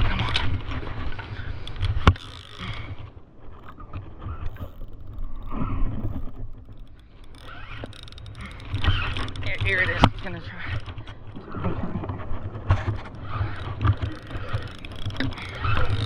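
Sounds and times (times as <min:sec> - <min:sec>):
wind rumble on microphone: 0:00.0 - 0:16.0
fishing reel spinning: 0:01.2 - 0:11.1, 0:13.1 - 0:16.0.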